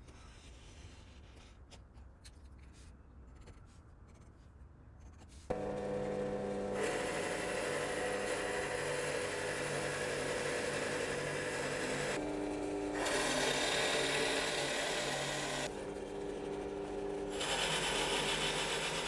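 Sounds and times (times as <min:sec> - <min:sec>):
power tool whining: 0:05.5 - 0:19.0.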